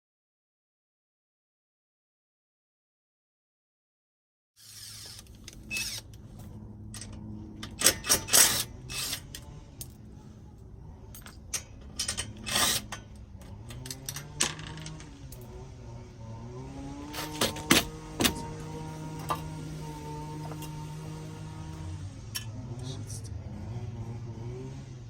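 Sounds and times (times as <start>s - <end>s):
steady low hum: 5.2s - 24.4s
metal tools clinking and clattering: 6.3s - 10.1s, 11.1s - 15.6s, 17.1s - 21.2s.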